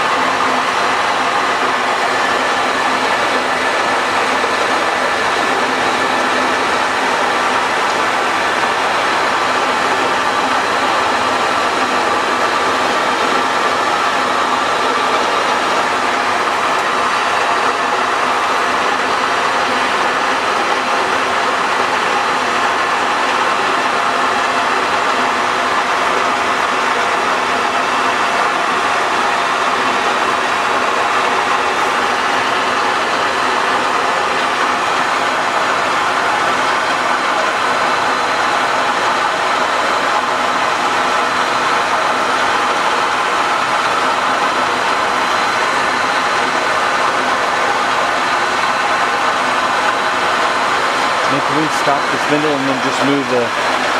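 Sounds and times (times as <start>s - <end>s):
lathe spindle whirring: 0.0s - 53.9s.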